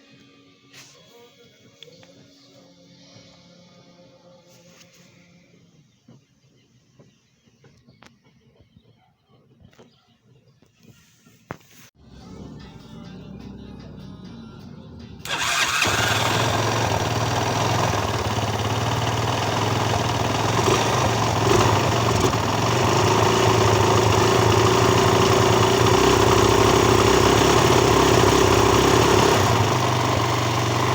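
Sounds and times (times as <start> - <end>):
motorcycle engine starting and running: 14.8 - 30.9.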